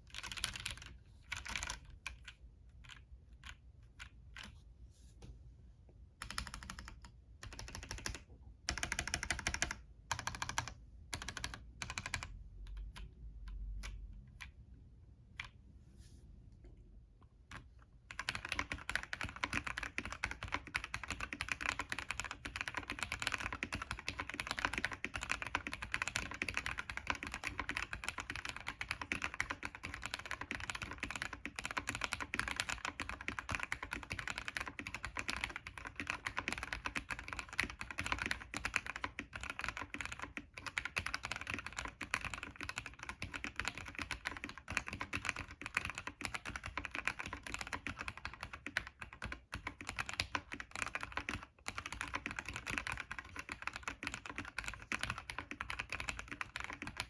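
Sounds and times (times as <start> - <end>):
mechanical keyboard typing: 0.1 - 4.5, 6.2 - 14.6, 17.5 - 57.0.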